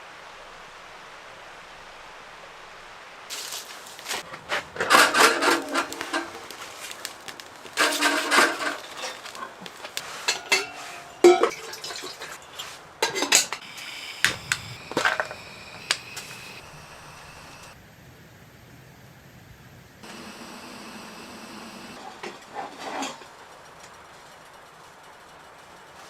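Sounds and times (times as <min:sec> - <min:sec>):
metal pots and utensils clattering: 0:03.3 - 0:15.4, 0:22.0 - 0:23.4.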